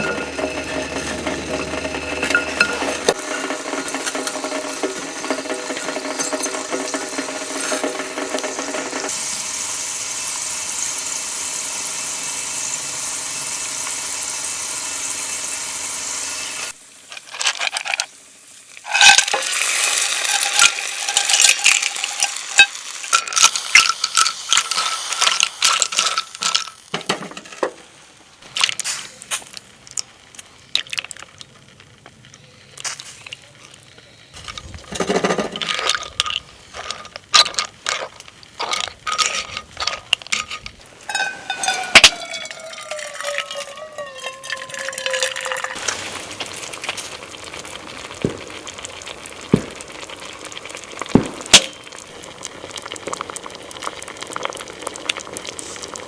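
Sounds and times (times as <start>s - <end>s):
cookware and utensils clinking: 0.0s - 9.1s, 18.8s - 27.9s, 34.4s - 47.0s
food hissing on a stove: 3.1s - 30.7s, 40.8s - 56.0s
short falling squeal: 41.7s - 45.8s.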